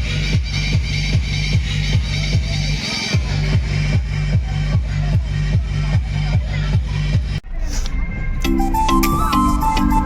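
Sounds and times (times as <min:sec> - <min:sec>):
electronic dance music: 0:00.0 - 0:07.4.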